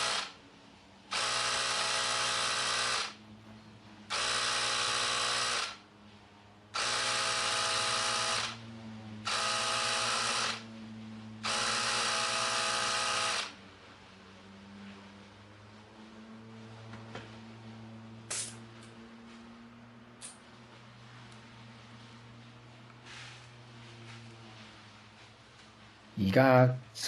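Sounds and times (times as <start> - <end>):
tire inflator motor running: 0.0 - 0.4, 1.0 - 3.3, 4.1 - 5.9, 6.7 - 13.6.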